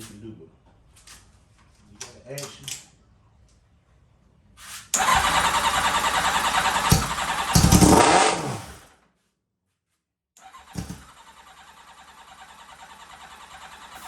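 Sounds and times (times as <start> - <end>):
motorcycle engine cranking on starter: 5.0 - 8.8, 10.4 - 14.0.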